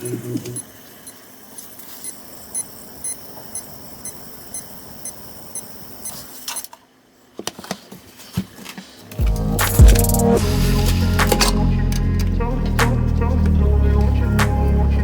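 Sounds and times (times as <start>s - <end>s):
power supply high chirping: 0.0s - 6.7s.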